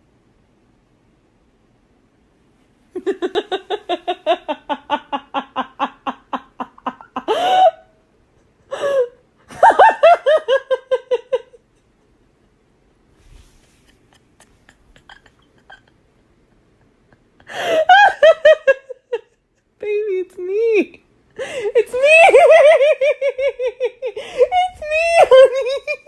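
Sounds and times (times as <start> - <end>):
person laughing hard: 3.0 - 7.9, 8.5 - 12.0, 13.9 - 19.4, 21.4 - 26.0.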